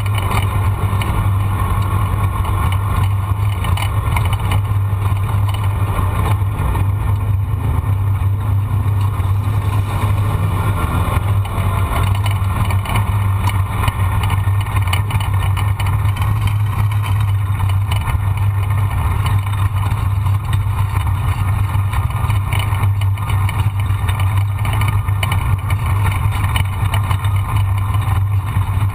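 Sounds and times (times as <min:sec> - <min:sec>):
vehicle engine droning: 0:00.0 - 0:28.9.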